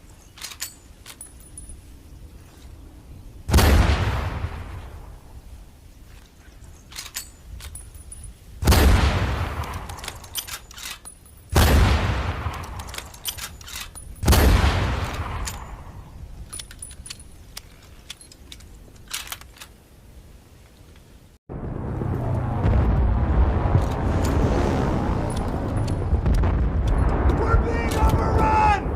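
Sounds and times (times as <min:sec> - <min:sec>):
metallic clicking and rattling: 0:00.2 - 0:01.8, 0:06.8 - 0:08.4, 0:09.6 - 0:11.6, 0:12.5 - 0:14.3, 0:16.4 - 0:19.8
rifle shots echoing: 0:03.5 - 0:05.0, 0:08.6 - 0:10.3, 0:11.5 - 0:16.0.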